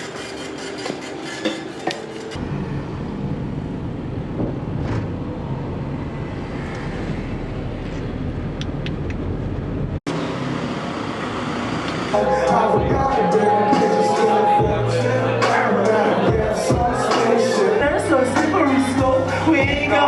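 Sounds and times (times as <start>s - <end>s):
car road rumble from inside: 2.4s - 10.0s.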